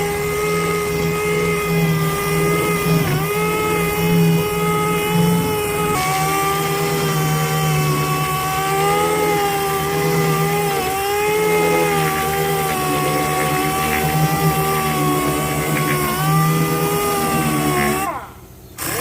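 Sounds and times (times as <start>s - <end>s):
power sander on painted metal: 0.0s - 19.0s.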